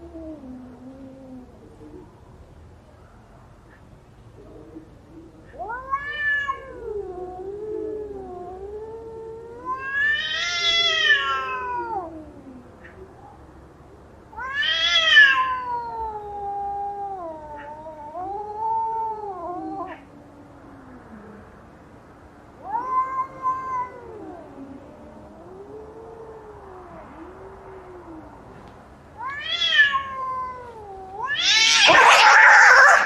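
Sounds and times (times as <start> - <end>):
cats yowling and screeching: 5.4 - 13.0, 14.3 - 21.2, 22.6 - 28.6, 29.2 - 33.0.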